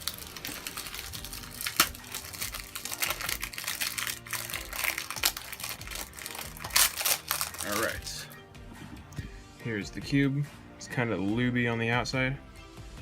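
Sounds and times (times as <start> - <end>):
plastic packaging crinkling: 0.0 - 8.1
background music: 0.0 - 13.0.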